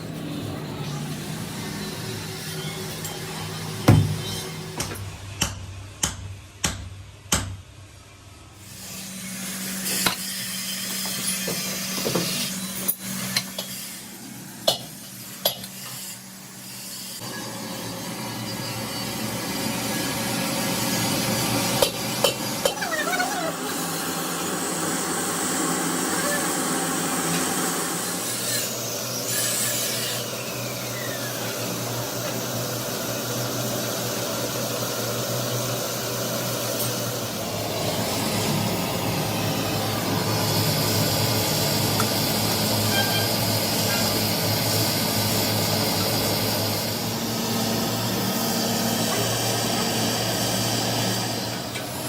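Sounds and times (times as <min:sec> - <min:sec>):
machine humming: 0:36.0 - 0:51.4.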